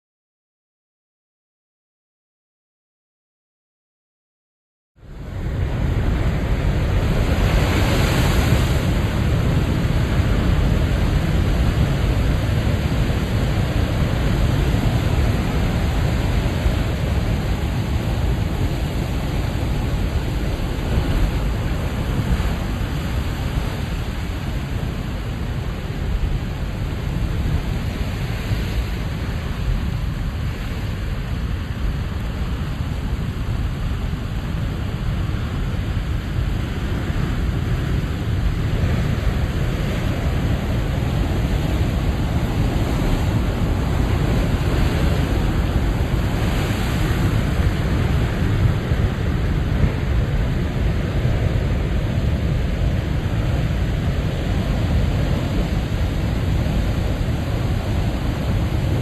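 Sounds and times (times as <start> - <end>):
waves breaking on rocky shore: 5.2 - 59.0.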